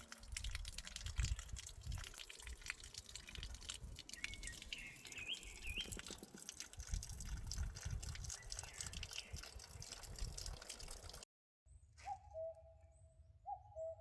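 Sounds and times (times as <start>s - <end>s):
water dripping and trickling: 0.0s - 11.3s
bird chirping: 4.1s - 6.3s, 8.2s - 10.0s, 11.7s - 14.0s.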